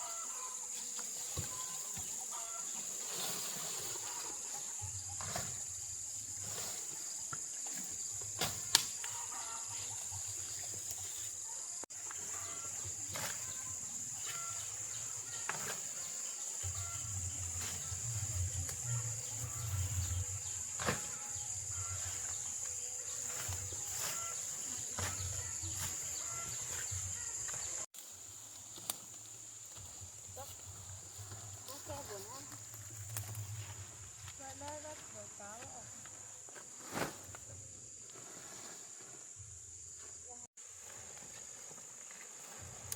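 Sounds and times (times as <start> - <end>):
high-pitched insect drone: 0.0 - 27.9.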